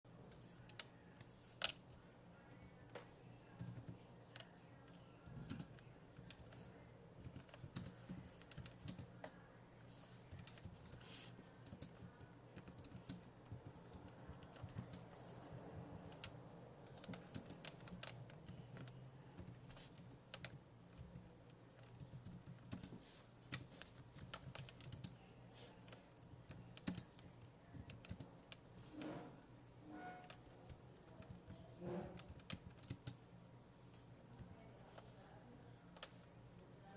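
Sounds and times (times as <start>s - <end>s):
typing on computer keyboard: 3.5s - 9.4s, 10.3s - 25.2s, 25.9s - 28.6s, 30.3s - 33.2s.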